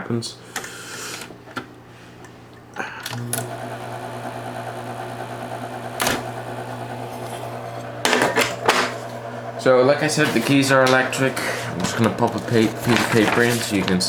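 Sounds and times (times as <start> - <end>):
typewriter motor humming: 3.0 - 14.0
typewriter switch click: 6.0 - 6.3
typewriter clatter: 10.2 - 14.0.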